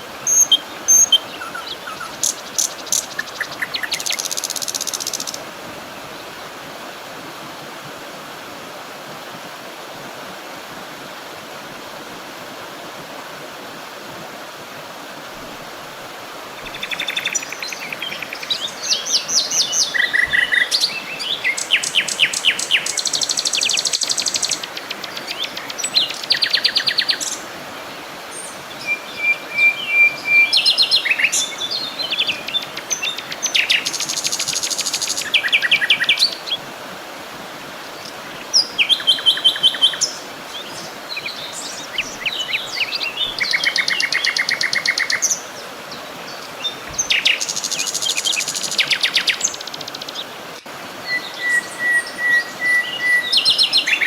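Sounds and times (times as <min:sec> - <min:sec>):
songbirds singing: 0:00.0 - 0:06.5, 0:16.5 - 0:36.7, 0:37.6 - 0:54.0
flowing water rushing: 0:00.0 - 0:54.0.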